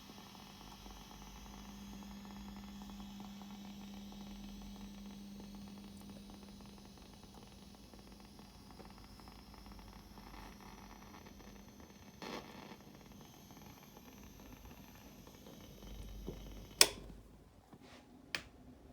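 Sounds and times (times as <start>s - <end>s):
guitar amplifier hiss: 3.9s - 17.3s
sharp click: 16.8s - 17.2s.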